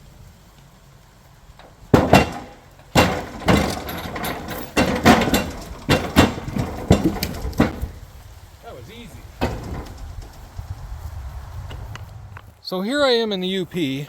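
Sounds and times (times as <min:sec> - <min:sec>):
wooden knocks and thumps: 0:01.6 - 0:08.1, 0:09.2 - 0:10.5.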